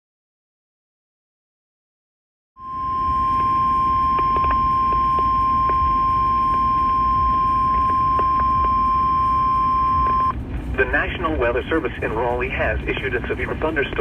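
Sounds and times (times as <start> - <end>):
steady alarm tone: 2.6 - 10.4
radio static: 2.7 - 14.0
scattered clicks: 4.1 - 8.9.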